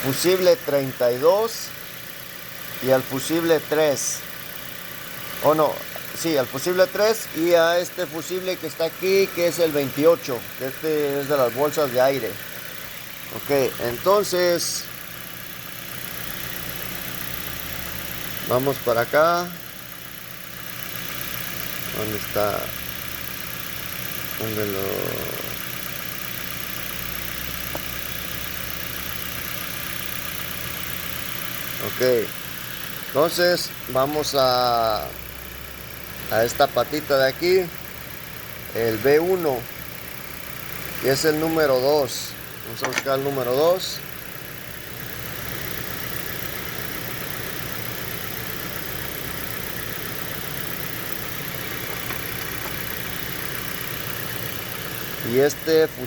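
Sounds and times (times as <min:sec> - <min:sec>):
car engine running: 0:00.0 - 0:56.0
cooling fan whirring: 0:40.0 - 0:56.0.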